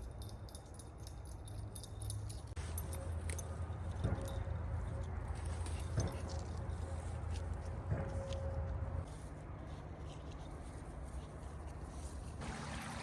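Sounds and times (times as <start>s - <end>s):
light metallic jingling: 0.0s - 4.8s.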